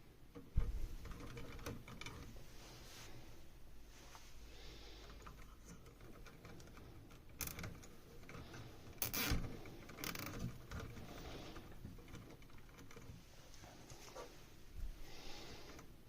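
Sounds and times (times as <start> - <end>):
faint handling clicks and knocks: 0.2 - 2.6, 5.0 - 15.0.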